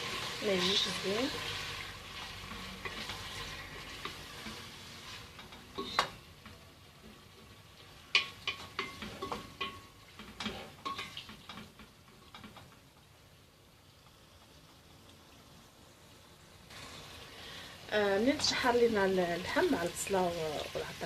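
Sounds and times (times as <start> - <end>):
metal spoon scraping a pot: 2.4 - 6.6, 8.2 - 11.6.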